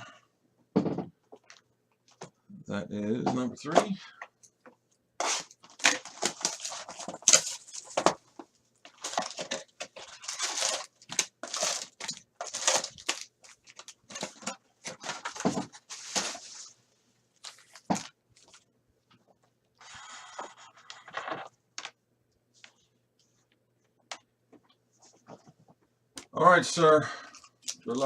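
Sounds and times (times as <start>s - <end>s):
plastic wrap crinkling and tearing: 5.2s - 8.2s, 8.9s - 16.7s.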